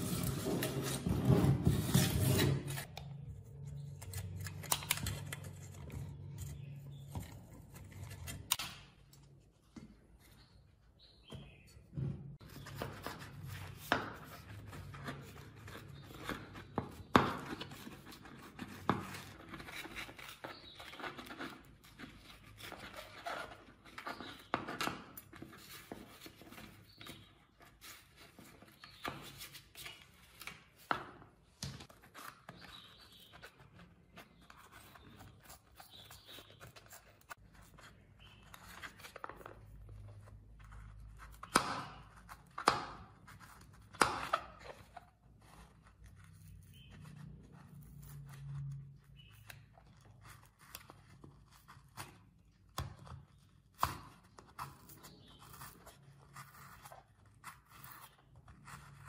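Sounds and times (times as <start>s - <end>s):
scraping and rubbing: 0.0s - 9.0s.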